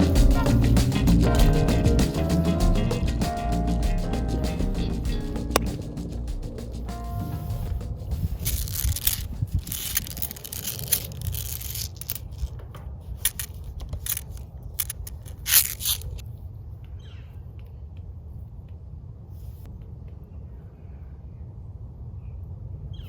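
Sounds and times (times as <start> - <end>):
fidget toys crackling and clicking: 8.3 - 12.5, 13.2 - 16.2.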